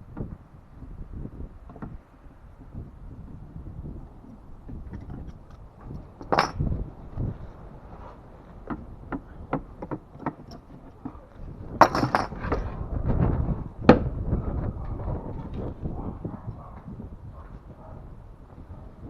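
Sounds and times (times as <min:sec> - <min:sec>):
hard objects knocking and clinking: 0:04.7 - 0:06.6, 0:08.6 - 0:12.6.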